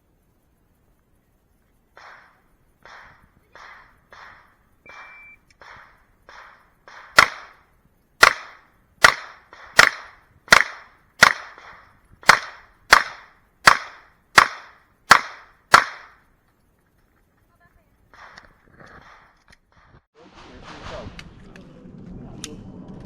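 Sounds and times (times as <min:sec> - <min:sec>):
handgun shots: 0:02.0 - 0:07.6, 0:08.2 - 0:16.2.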